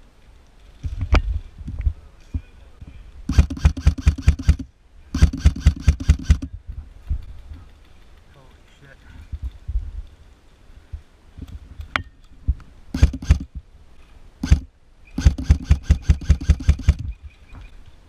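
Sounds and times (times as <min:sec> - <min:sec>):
airsoft rifle shots: 0:03.3 - 0:06.5, 0:12.9 - 0:13.5, 0:14.4 - 0:17.2.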